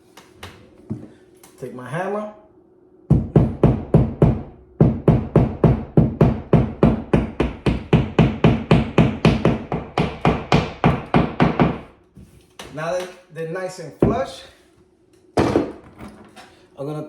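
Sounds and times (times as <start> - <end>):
hammer tapping wall anchors: 3.1 - 11.9.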